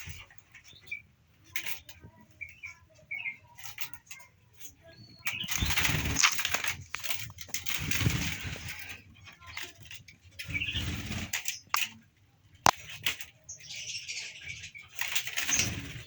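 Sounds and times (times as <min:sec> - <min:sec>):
chicks chirping: 0:05.2 - 0:07.1
rustling and fluttering: 0:05.2 - 0:11.9, 0:14.9 - 0:16.0.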